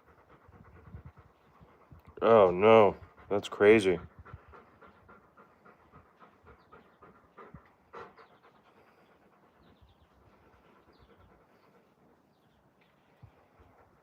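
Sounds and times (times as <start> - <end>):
dog panting rapidly: 0.0 - 14.0.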